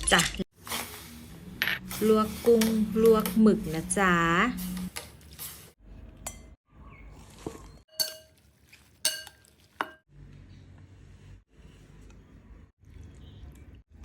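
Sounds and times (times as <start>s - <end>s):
cutlery clinking against dishes: 7.9s - 8.4s, 9.1s - 10.0s.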